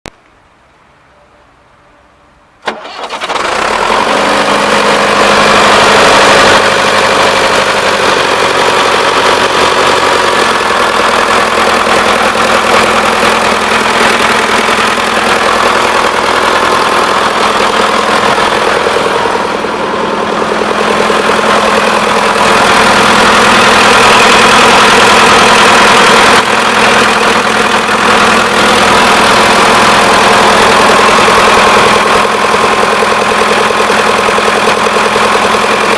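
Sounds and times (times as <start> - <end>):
diesel tractor engine running: 1.6 - 35.9.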